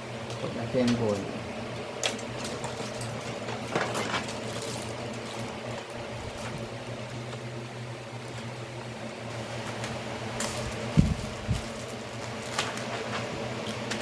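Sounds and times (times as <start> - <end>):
fan-like hum: 0.0 - 14.0
small parts clicking and rattling: 2.0 - 7.4.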